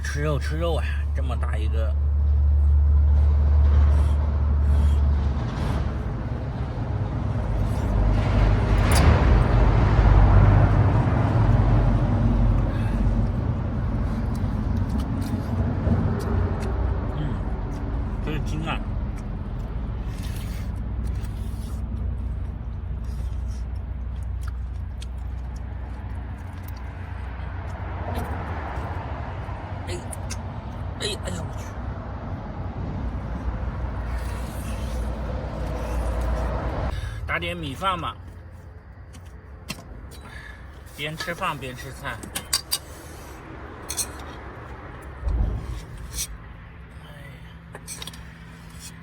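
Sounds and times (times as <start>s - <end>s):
traffic rumbling on bridge: 0.0s - 49.0s
utensils clicking while eating: 42.2s - 43.2s.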